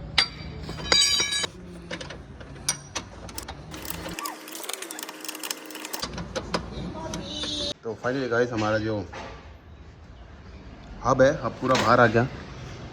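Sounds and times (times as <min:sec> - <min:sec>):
power wrench whirring: 0:03.4 - 0:06.0.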